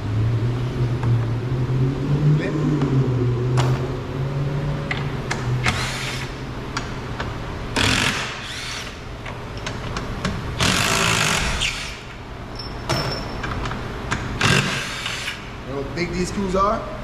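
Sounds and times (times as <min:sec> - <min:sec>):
steady low hum: 0:00.0 - 0:14.7.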